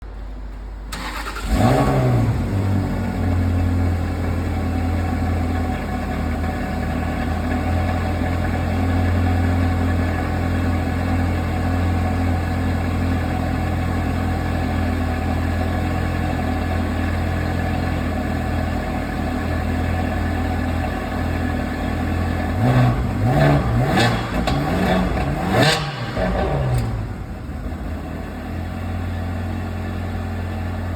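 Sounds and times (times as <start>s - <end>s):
car engine idling: 0.0s - 30.9s
engine revving: 1.0s - 2.9s, 22.4s - 28.0s.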